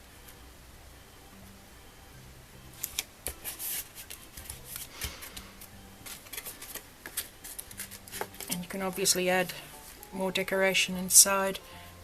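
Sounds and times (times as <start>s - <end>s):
paper rustling and clicking: 2.8s - 8.7s.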